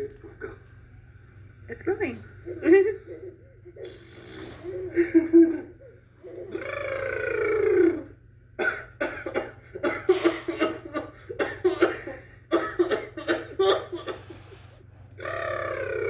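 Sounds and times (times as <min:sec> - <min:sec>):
man coughing: 0:08.6 - 0:14.4.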